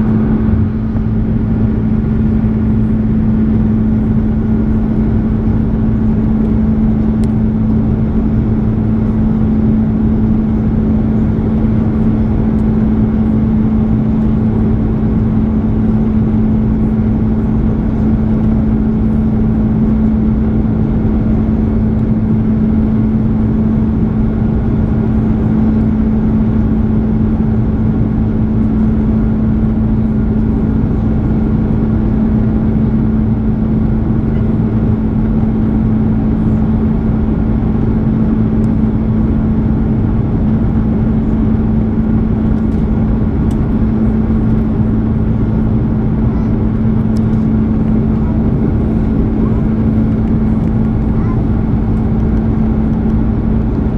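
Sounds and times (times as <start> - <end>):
jet engine cabin rumble: 0.0 - 53.9
steady hum: 0.0 - 53.9.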